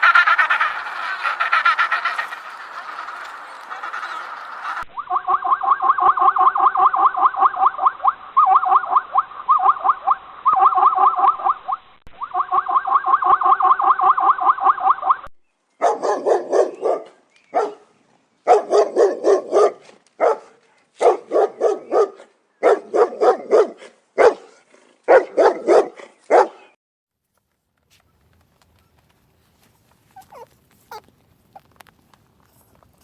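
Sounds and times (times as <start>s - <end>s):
fast pulsed animal calls: 0.0s - 15.2s
quick bark-like calls: 0.0s - 15.2s, 15.8s - 17.9s, 18.5s - 26.8s, 30.2s - 31.1s.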